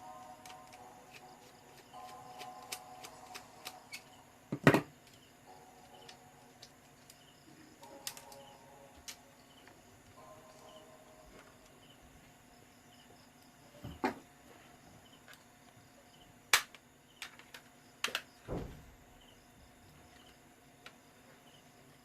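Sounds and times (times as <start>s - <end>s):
faint chirping: 0.0s - 14.0s.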